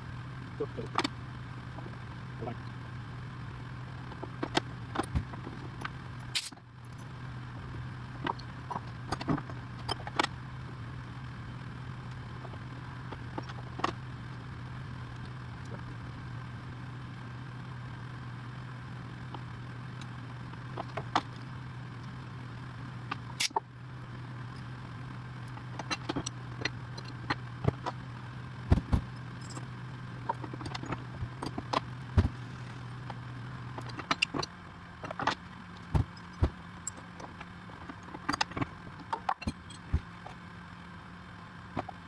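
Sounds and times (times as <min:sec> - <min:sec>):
low machinery hum: 0:00.0 - 0:42.0
metallic clicks of tools: 0:05.8 - 0:07.1.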